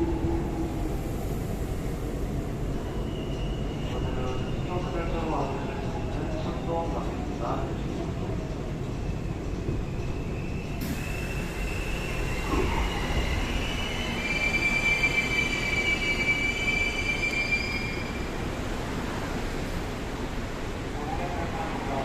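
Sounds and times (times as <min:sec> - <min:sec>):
subway car low rumble: 0:00.0 - 0:22.0
wheels squealing against rail: 0:02.8 - 0:06.8, 0:09.0 - 0:18.5.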